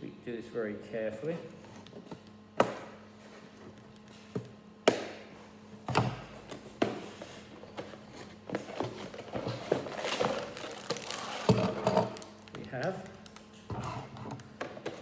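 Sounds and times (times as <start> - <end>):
crinkly handling noise: 6.5 - 15.0.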